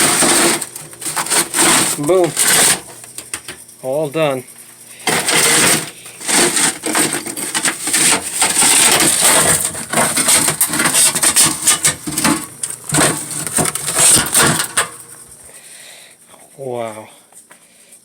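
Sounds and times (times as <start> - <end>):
hard objects clattering and scraping: 0.0 - 3.7, 4.9 - 15.4.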